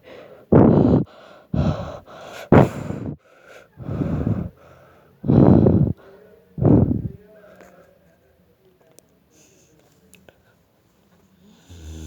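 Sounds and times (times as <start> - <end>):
person gasping breaths: 0.0 - 7.2, 11.5 - 12.0.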